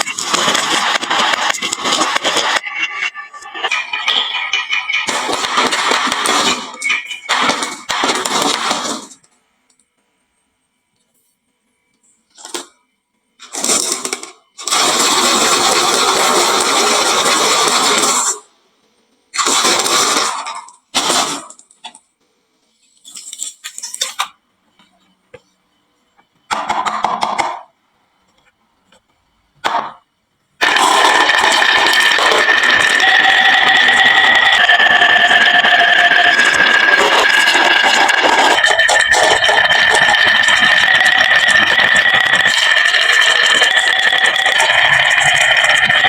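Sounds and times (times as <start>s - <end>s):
marbles rattling down wooden run: 0.0s - 8.9s, 30.6s - 46.0s.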